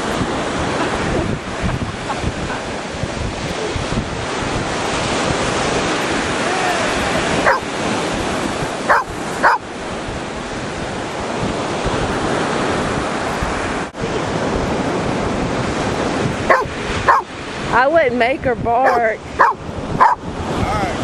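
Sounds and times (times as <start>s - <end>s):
surf: 0.0s - 21.0s
wind buffeting microphone: 0.0s - 21.0s
dog barking: 7.4s - 7.7s, 8.8s - 9.6s, 16.5s - 17.3s, 18.8s - 20.2s.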